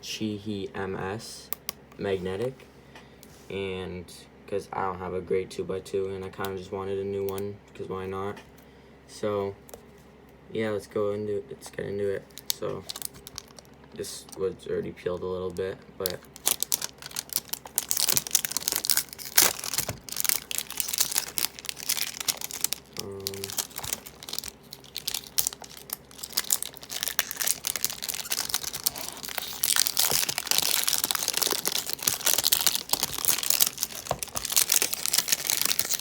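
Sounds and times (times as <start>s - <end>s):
plastic wrap crinkling: 12.2s - 14.4s, 15.5s - 36.0s.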